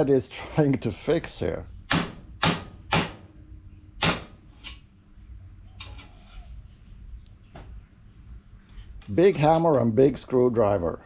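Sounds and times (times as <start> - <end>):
hammer striking metal: 1.9 - 3.3, 4.0 - 4.4.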